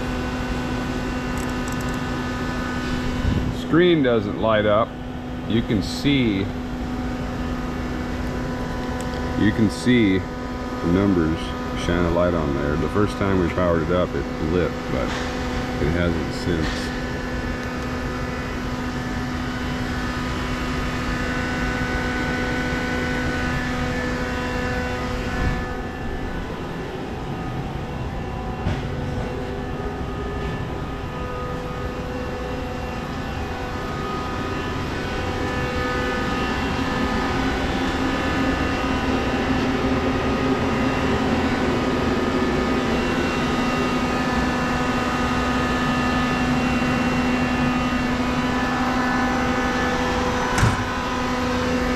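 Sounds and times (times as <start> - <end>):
lathe machine humming and whining: 0.0 - 51.9.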